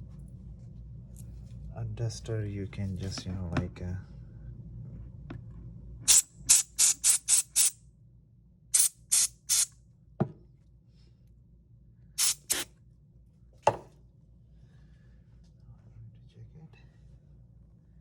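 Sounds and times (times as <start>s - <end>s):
compressed air duster hisses: 6.1s - 7.7s, 8.8s - 9.7s, 12.2s - 12.6s.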